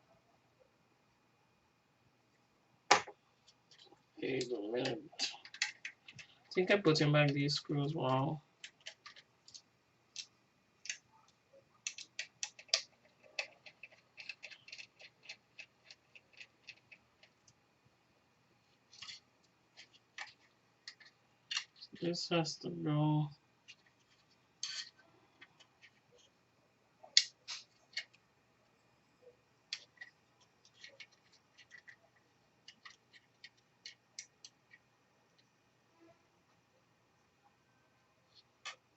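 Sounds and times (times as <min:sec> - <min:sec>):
plastic laptop parts handled: 0:08.6 - 0:17.6, 0:18.8 - 0:21.9, 0:23.6 - 0:26.4, 0:29.7 - 0:34.9.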